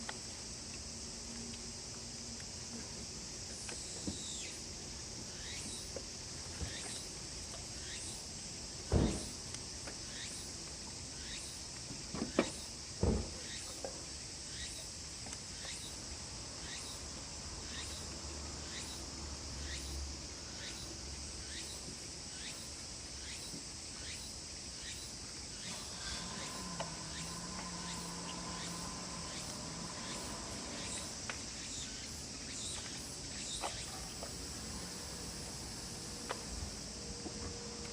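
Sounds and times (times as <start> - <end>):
insects droning: 0.0 - 37.9
low hum: 25.7 - 31.6.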